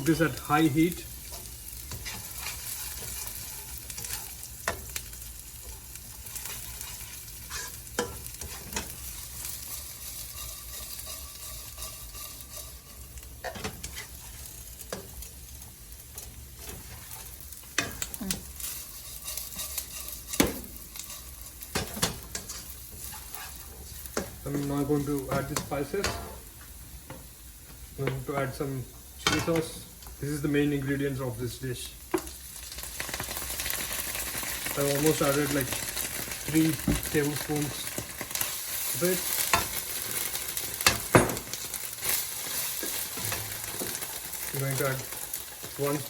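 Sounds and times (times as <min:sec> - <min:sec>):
spatula scraping a pan: 0:00.0 - 0:26.5, 0:32.1 - 0:46.0
chicken sizzling in a pan: 0:00.0 - 0:46.0.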